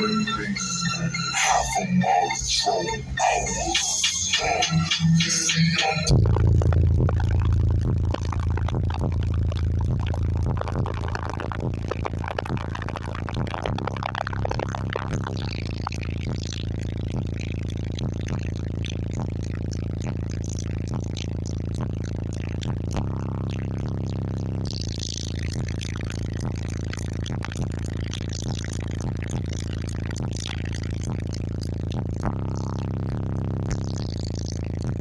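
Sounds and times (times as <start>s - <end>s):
bass-heavy music through subwoofers: 0.0s - 35.0s.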